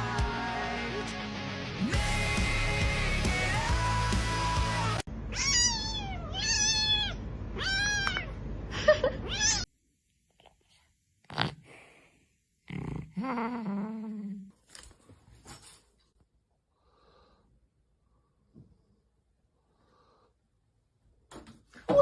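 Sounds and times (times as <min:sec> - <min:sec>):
background music: 0:00.0 - 0:05.0
cat meowing: 0:05.3 - 0:08.4.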